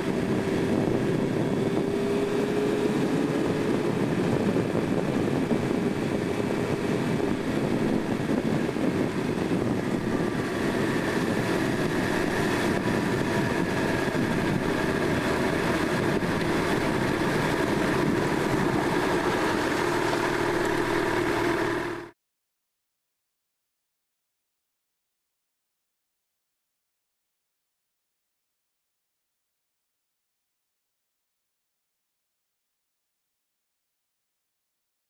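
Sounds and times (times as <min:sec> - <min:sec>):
wind rushing over microphone: 0:00.0 - 0:22.1
motorcycle engine drone: 0:00.0 - 0:22.2.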